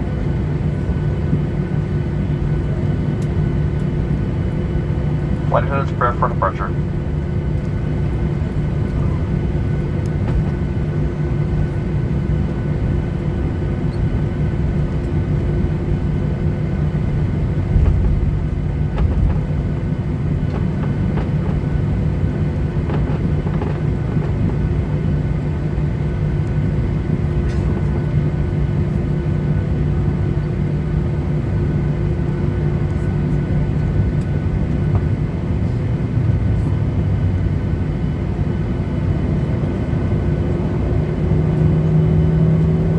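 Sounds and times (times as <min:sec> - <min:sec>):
jet engines droning in cabin: 0:00.0 - 0:42.9.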